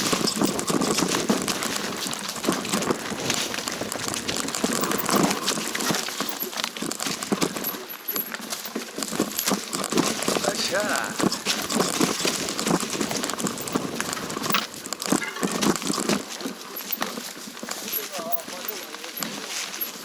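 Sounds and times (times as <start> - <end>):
footsteps crunching on stones: 0.0 - 20.0.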